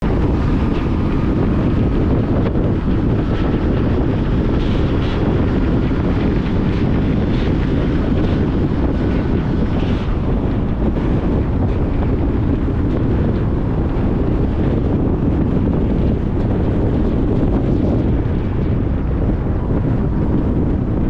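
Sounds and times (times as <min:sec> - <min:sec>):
tyre and wind noise: 0:00.0 - 0:21.0.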